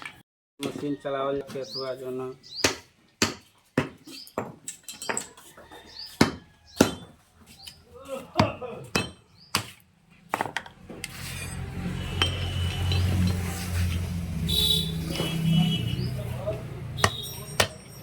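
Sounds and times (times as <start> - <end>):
hammer striking metal: 11.1 - 13.5, 17.0 - 18.0.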